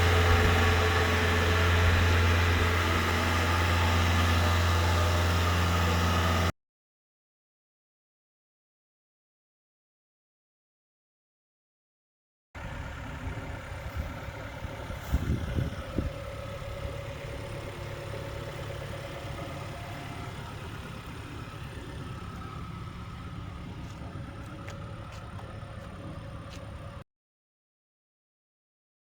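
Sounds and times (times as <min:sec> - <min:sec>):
engine idling: 0:00.0 - 0:06.5, 0:12.6 - 0:27.0
engine knocks: 0:00.0 - 0:06.5, 0:12.6 - 0:27.0.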